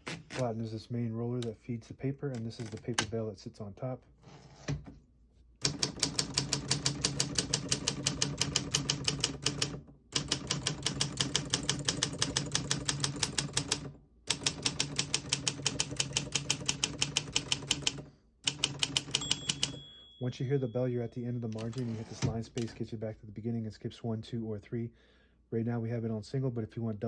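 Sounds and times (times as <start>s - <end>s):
typewriter keys typing: 5.6s - 19.8s.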